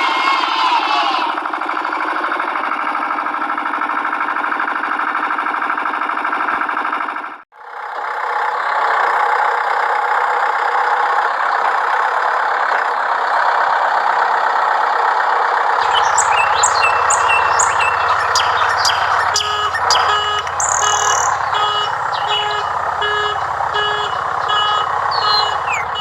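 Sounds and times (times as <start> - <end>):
small diesel engine running: 15.8 - 26.0.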